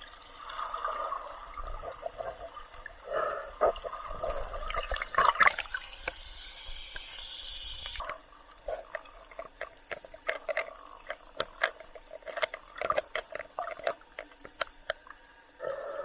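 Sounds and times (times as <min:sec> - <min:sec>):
bubbly gurgles: 0:00.0 - 0:16.0
underwater hiss: 0:03.0 - 0:08.1
underwater clicks: 0:06.9 - 0:15.3.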